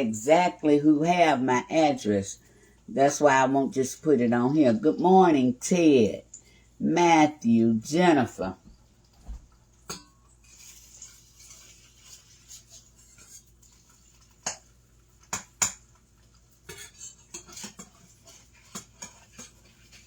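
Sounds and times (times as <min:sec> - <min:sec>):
utensils and dishes clinking: 0:16.6 - 0:20.0.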